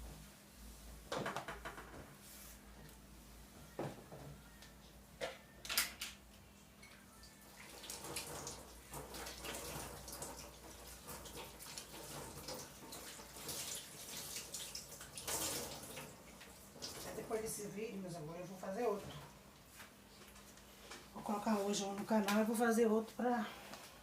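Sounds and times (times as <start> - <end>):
kitchen tap running into sink: 7.6 - 17.3.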